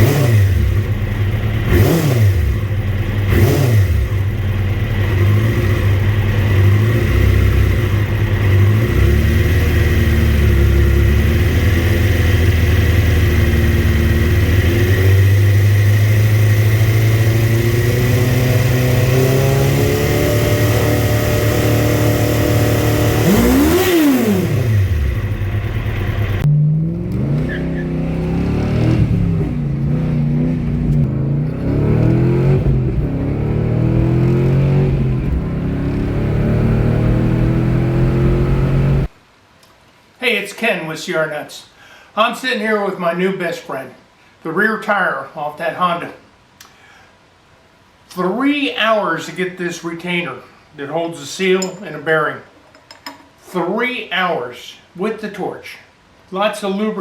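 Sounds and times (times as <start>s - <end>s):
vehicle engines revving: 0.0s - 39.1s.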